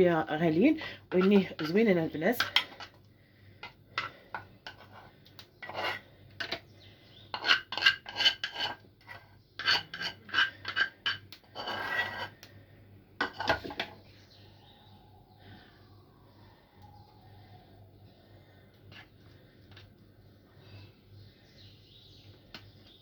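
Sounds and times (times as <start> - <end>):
utensil scraping a bowl: 4.0 - 6.6, 7.3 - 12.5.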